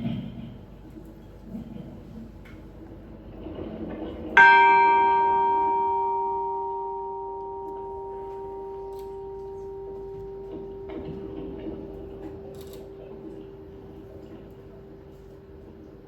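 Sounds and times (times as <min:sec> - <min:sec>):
bell ringing: 0:04.4 - 0:15.4.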